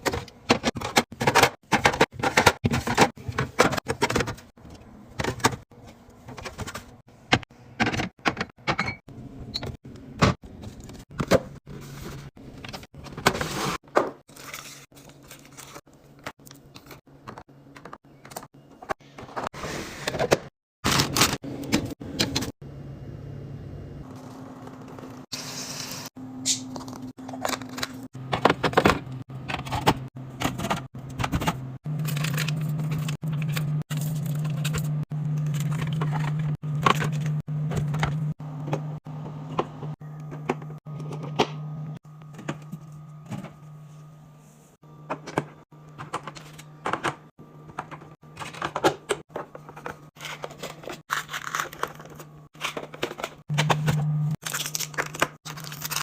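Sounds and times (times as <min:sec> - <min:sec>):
food containers clicking and knocking: 0:00.0 - 0:05.6, 0:26.8 - 0:34.8, 0:45.1 - 0:56.0.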